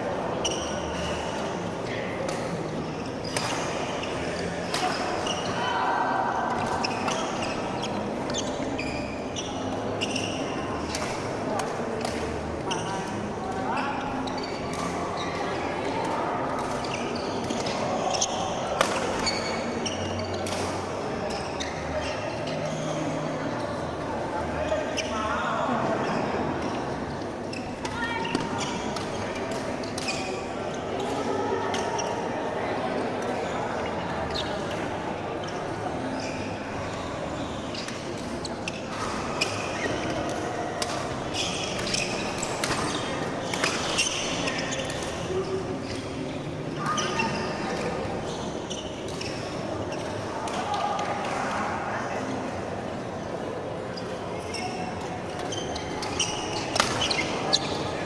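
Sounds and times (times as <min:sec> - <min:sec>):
hall hubbub: 0:00.0 - 0:58.0
shoes squeaking on court: 0:00.3 - 0:01.6, 0:06.5 - 0:15.5, 0:16.5 - 0:23.1, 0:26.0 - 0:32.4, 0:35.4 - 0:50.6, 0:54.0 - 0:58.0
sneaker squeaks on court: 0:00.4 - 0:01.2, 0:06.8 - 0:11.2, 0:35.5 - 0:46.3, 0:54.4 - 0:58.0.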